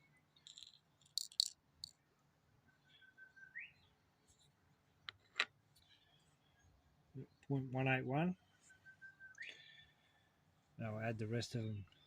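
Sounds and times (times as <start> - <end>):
faint bird chirps: 2.0 - 4.5, 5.8 - 7.6, 8.3 - 10.4.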